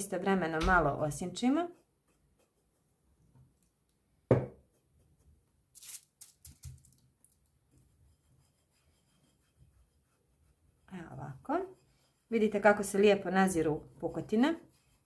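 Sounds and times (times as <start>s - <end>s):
sharp knock on tabletop: 4.3s - 4.6s.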